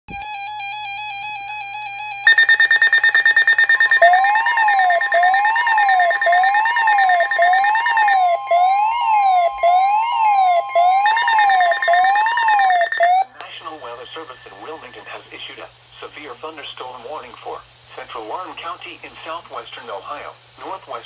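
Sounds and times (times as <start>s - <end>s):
rapidly pulsing high beep: 2.3s - 13.2s
steady tone: 2.3s - 13.2s.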